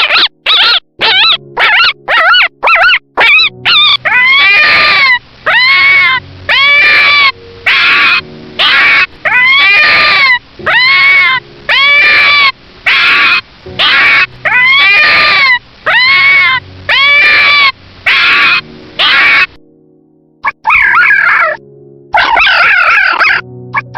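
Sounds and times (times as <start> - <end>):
animal giving high-pitched calls: 0.0 - 19.6, 20.4 - 21.6, 22.2 - 23.9.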